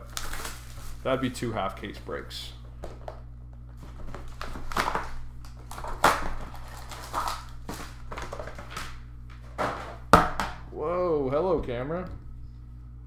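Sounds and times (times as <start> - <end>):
card packaging rustling: 0.0 - 2.0, 3.0 - 9.0
steady low hum: 0.0 - 13.0.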